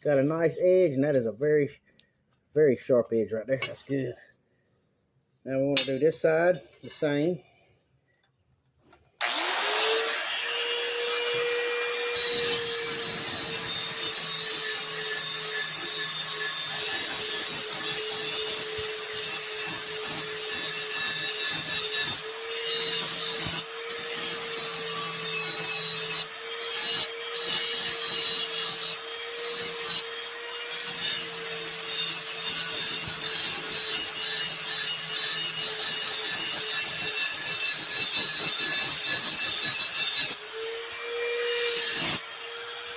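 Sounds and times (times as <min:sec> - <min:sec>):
power grinder grinding metal: 0:09.2 - 0:42.9.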